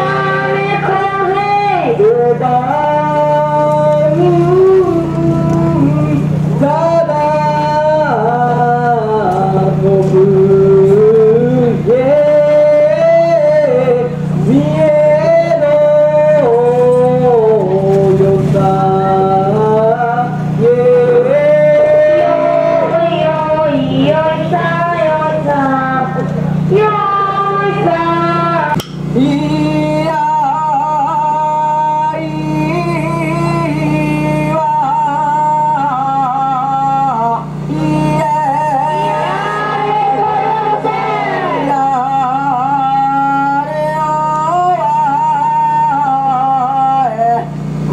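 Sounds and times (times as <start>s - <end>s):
man chanting solo: 0.0s - 47.5s
steady low hum: 0.0s - 47.9s.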